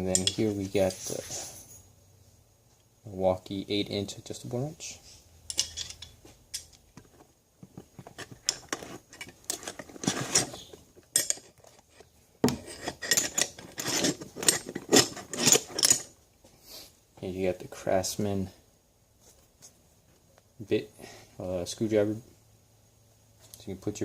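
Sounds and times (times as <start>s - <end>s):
metal hand tools clinking: 0.0s - 0.5s, 5.5s - 6.8s, 8.0s - 16.1s
tools scraping: 0.0s - 1.8s, 5.5s - 16.2s.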